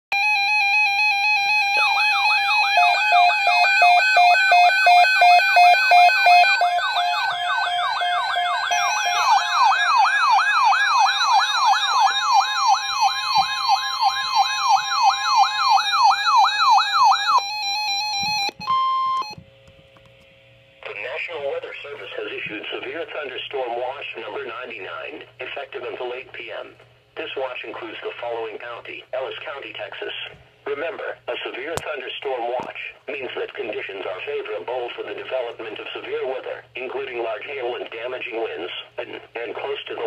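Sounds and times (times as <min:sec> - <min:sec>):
siren yelp: 0:00.1 - 0:19.4
stepped electronic siren tones: 0:00.1 - 0:19.5.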